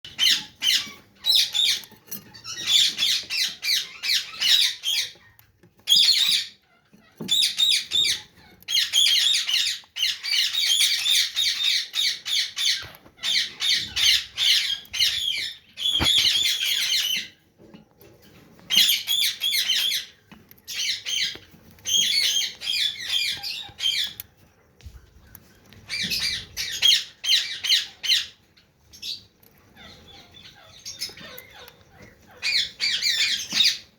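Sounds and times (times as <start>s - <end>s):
parrots squawking: 29.8s - 33.8s.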